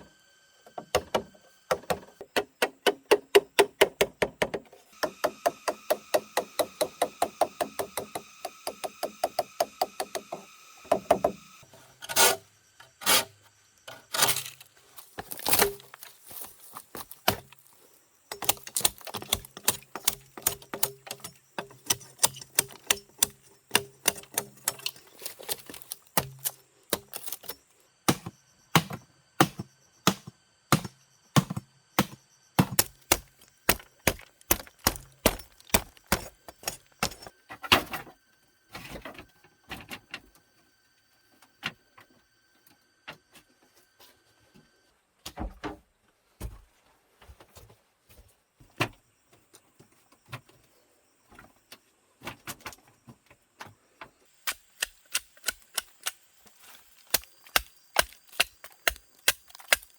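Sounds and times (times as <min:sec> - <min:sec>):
hand tool striking wood: 0:00.8 - 0:11.4, 0:18.3 - 0:27.5, 0:28.1 - 0:37.3, 0:57.0 - 0:59.9.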